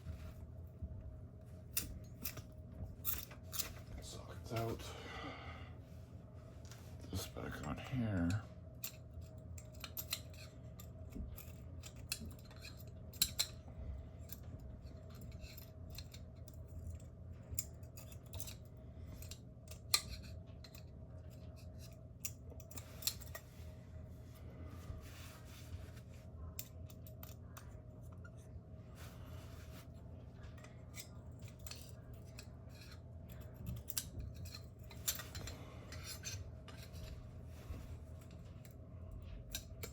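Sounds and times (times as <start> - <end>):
low steady hum: 0.0 - 39.9.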